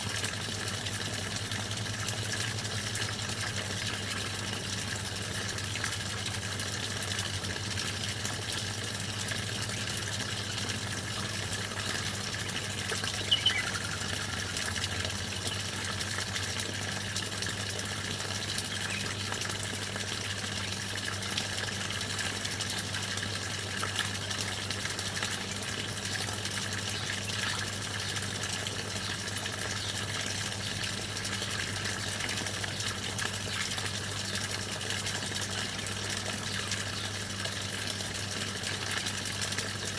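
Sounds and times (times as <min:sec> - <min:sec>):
running water rushing: 0:00.0 - 0:39.5
low constant hum: 0:00.1 - 0:36.9
songbirds chirping: 0:11.2 - 0:14.4, 0:18.6 - 0:19.4.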